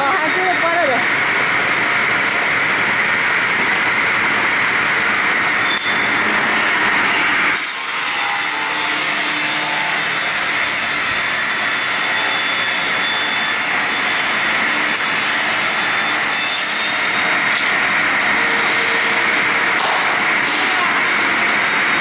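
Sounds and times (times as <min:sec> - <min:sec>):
circular saw cutting log: 0:05.3 - 0:22.0.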